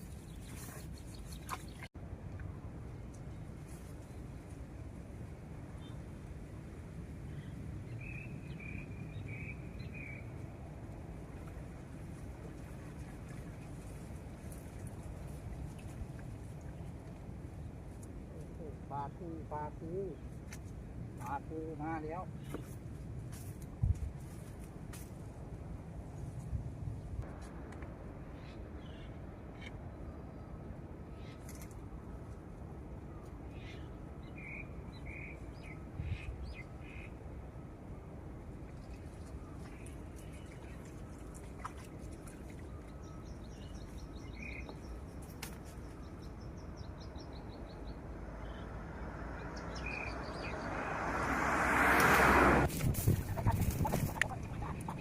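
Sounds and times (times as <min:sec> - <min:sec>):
outdoor background noise: 0:00.0 - 0:55.0
wind buffeting microphone: 0:51.2 - 0:55.0.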